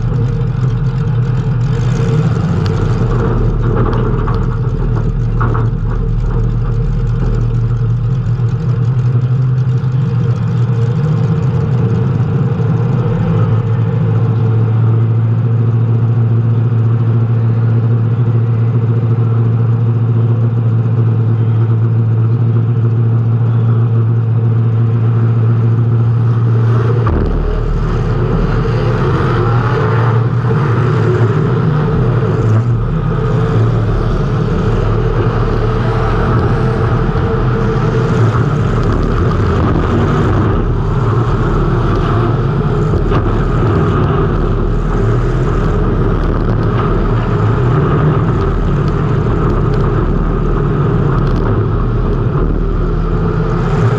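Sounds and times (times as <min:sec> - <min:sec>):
race car engine running hard: 0:00.0 - 0:53.9.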